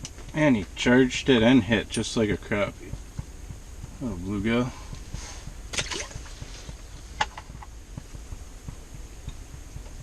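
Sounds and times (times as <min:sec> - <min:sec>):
wind buffeting microphone: 0:00.0 - 0:10.0
scuffing rustle: 0:01.9 - 0:08.9.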